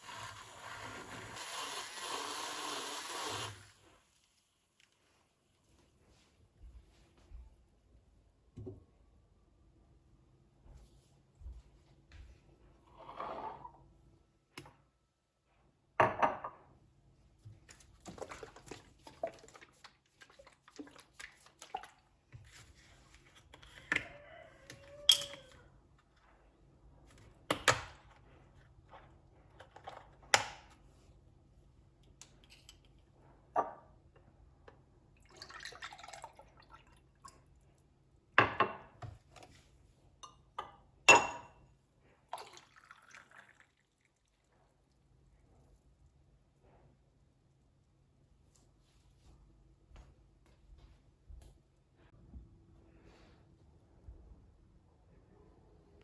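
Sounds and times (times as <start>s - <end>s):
water dripping or pouring: 35.2s - 37.6s, 42.3s - 45.7s.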